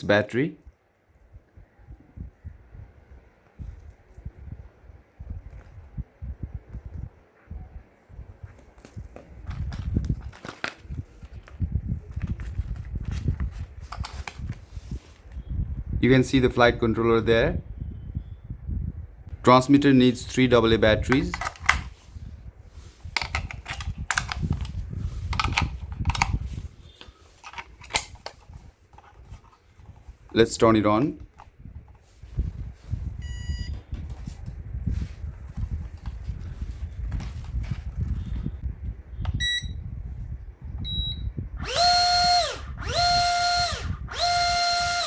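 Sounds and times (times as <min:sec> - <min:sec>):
short electronic beeps: 0:33.2 - 0:33.8, 0:39.4 - 0:39.8, 0:40.8 - 0:41.3
electric motors whining: 0:41.6 - 0:45.0.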